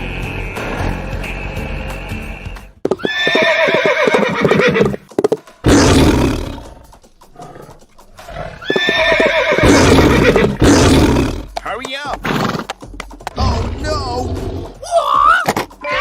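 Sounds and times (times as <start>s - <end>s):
horse whinnying: 2.9s - 11.5s, 15.0s - 16.0s.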